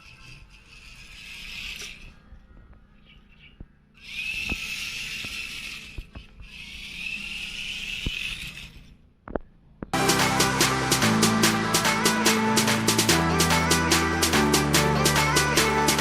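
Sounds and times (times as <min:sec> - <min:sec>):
motor and gears whirring: 0:00.0 - 0:09.9
gear clicks: 0:04.0 - 0:10.0
loud music with a beat: 0:10.0 - 0:16.0.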